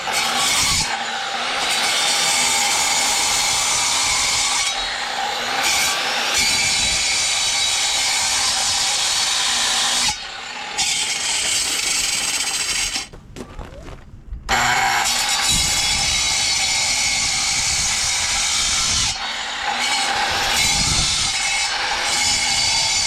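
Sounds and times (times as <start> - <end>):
power tool grinding: 0.0 - 13.1, 14.5 - 23.0.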